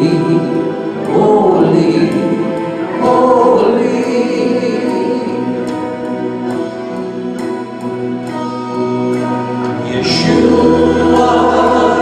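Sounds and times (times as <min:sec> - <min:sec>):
sustained chords: 0:00.0 - 0:12.0.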